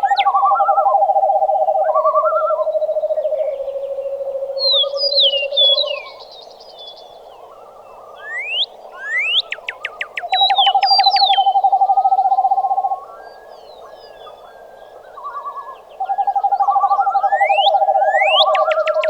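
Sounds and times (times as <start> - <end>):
whistled bird calls: 4.6 - 6.2, 7.5 - 14.5, 15.1 - 19.0.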